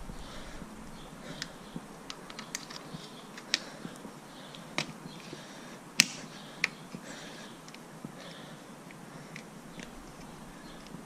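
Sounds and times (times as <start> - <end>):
plastic covers clicking: 1.3 - 5.4, 6.0 - 7.9.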